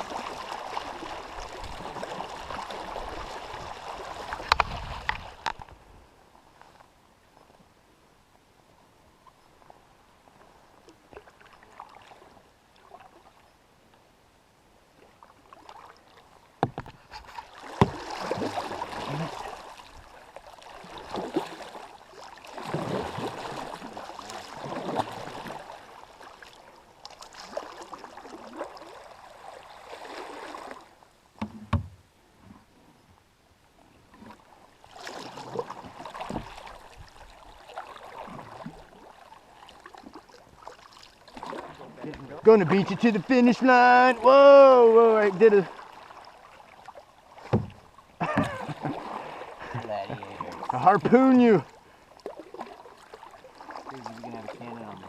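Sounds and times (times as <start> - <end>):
water splashing from paddle strokes: 0.0 - 5.6, 15.1 - 32.0, 34.1 - 55.0
paddle knocking against kayak: 16.6 - 18.3, 31.4 - 32.0, 35.7 - 36.7, 47.4 - 48.8.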